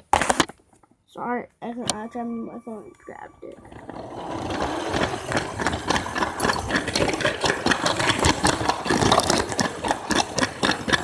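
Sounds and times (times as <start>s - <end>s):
plastic parts clicking and rattling: 3.6s - 11.0s.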